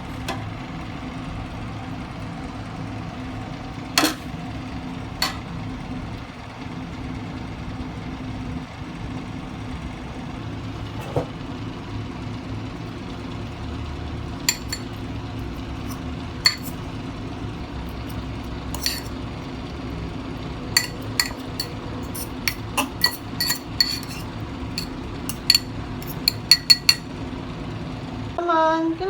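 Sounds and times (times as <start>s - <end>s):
dishes and tableware clinking: 4.0s - 4.3s, 5.2s - 5.4s, 14.5s - 15.1s, 15.8s - 16.8s, 18.8s - 19.2s, 20.8s - 27.1s
steady low hum: 9.5s - 29.0s.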